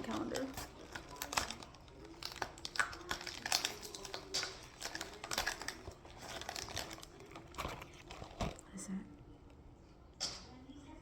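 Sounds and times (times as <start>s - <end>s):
packaging crinkling: 0.0s - 8.8s.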